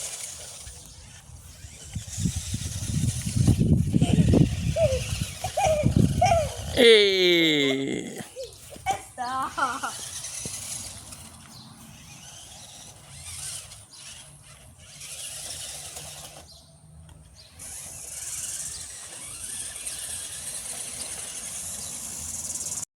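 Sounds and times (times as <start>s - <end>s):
toy truck electric motor whirring: 0.0s - 22.9s.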